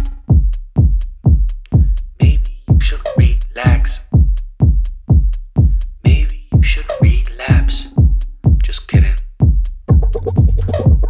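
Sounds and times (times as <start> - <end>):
deep bass kick: 0.0 - 11.0
hi-hat ticks: 0.0 - 11.0
electronic music: 10.0 - 11.0.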